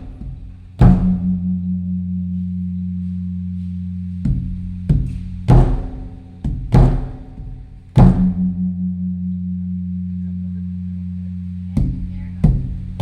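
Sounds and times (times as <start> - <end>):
large temple drum booming: 0.0 - 1.8, 4.3 - 8.8, 11.8 - 13.0
steady low drone: 0.0 - 13.0.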